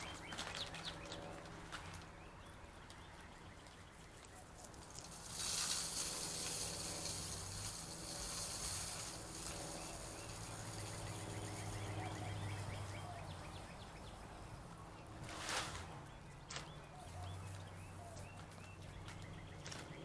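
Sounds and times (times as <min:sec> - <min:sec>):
steady low hum: 0:00.0 - 0:20.0
rustling hiss: 0:04.4 - 0:12.0.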